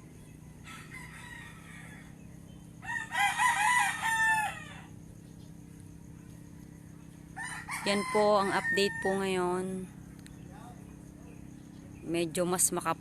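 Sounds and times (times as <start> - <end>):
rooster crowing: 0.6 - 2.2, 2.8 - 4.9, 7.3 - 9.4.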